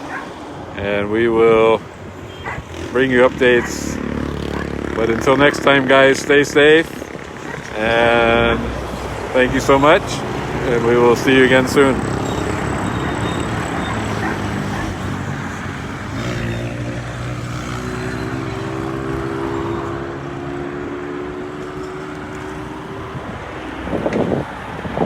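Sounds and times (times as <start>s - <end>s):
vehicle engine humming: 0.0s - 24.5s
traffic noise: 0.0s - 25.0s
wind rumbling on microphone: 0.0s - 25.0s.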